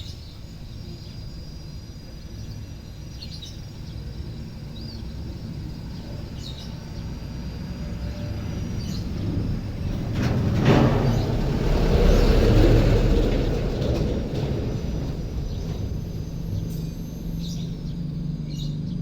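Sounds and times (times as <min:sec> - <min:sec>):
low rumble of traffic: 0:00.0 - 0:19.0
bird chirps: 0:15.0 - 0:19.0.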